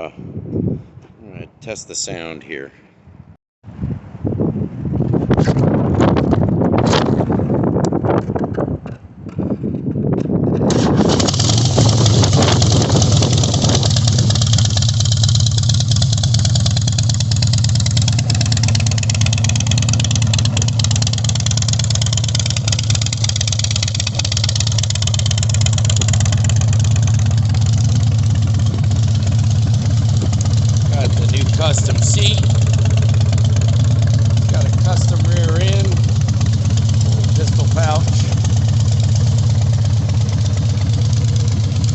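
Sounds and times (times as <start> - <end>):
motorcycle engine idling: 11.0 - 41.9.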